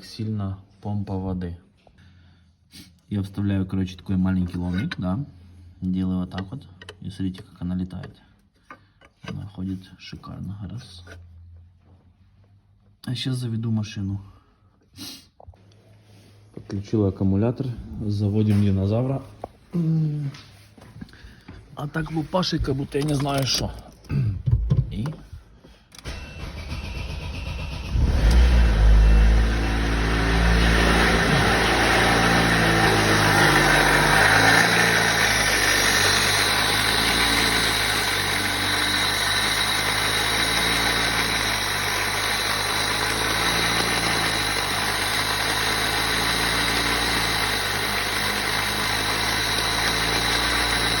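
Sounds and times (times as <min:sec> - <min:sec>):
engine starter cranking: 0:22.8 - 0:24.0, 0:25.9 - 0:51.0.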